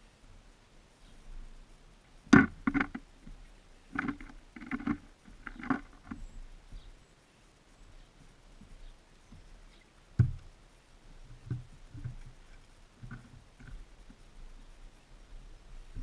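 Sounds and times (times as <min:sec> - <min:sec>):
birds pecking on feeder: 0:02.2 - 0:07.0, 0:07.8 - 0:16.0.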